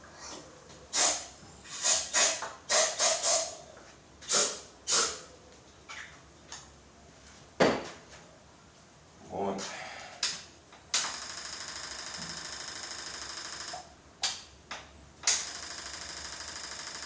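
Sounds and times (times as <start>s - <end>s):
aerosol can hissing sprays: 1.0s - 3.5s, 4.3s - 5.2s.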